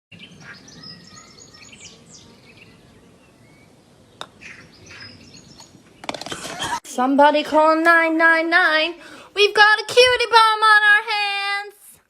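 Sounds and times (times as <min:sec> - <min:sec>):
birds chirping faintly: 0:00.1 - 0:06.4.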